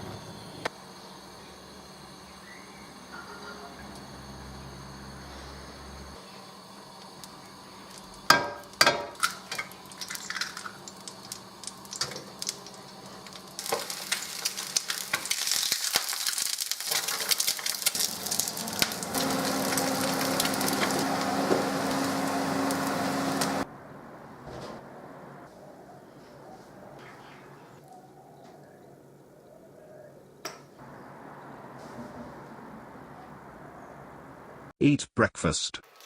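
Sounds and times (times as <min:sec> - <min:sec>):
food sizzling in a hot pan: 0:06.5 - 0:23.6.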